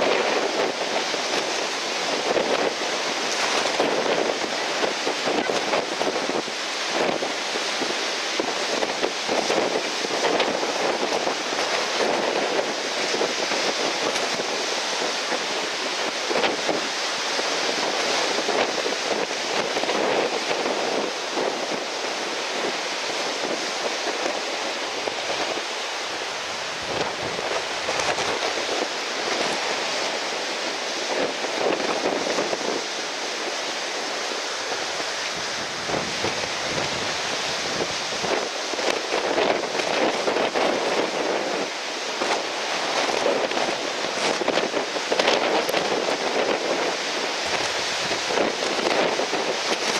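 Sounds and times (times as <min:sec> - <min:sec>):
breaking surf: 0:00.0 - 0:49.9
wind buffeting microphone: 0:00.0 - 0:49.9.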